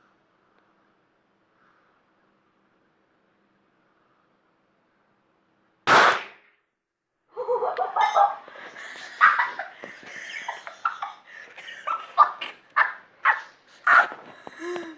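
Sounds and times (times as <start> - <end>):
loud bang: 5.9 - 6.4.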